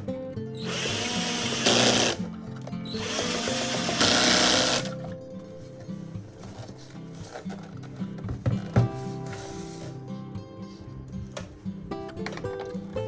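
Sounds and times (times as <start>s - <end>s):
background music: 0.0s - 13.0s
power drill running: 0.6s - 2.2s, 2.9s - 5.0s.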